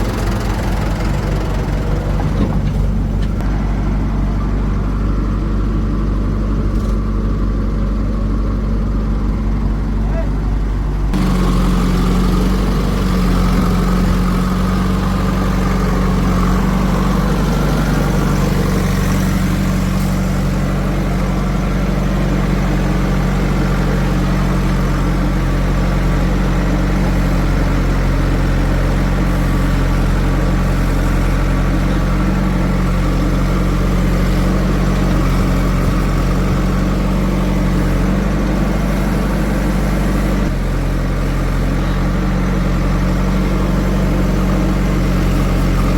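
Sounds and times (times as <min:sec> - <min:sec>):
diesel engine running steadily: 0:00.0 - 0:45.9.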